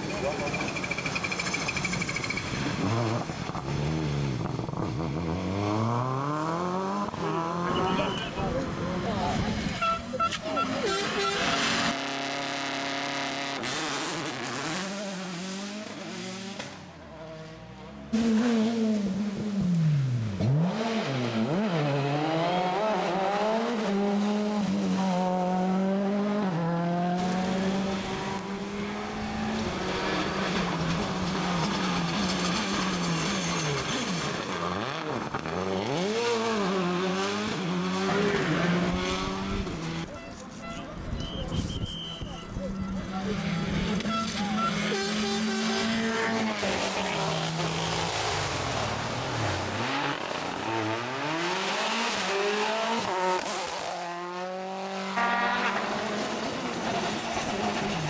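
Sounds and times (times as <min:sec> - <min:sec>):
rally car engines revving: 0:00.0 - 0:58.0.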